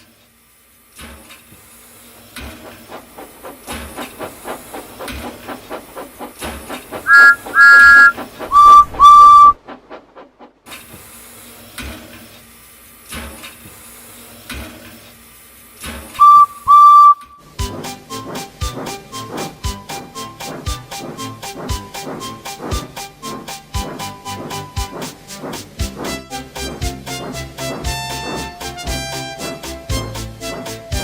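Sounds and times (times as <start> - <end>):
steam locomotive chuffing: 0.9 - 14.6, 15.7 - 31.0
steam whistle blasts: 7.0 - 9.6, 16.2 - 17.5.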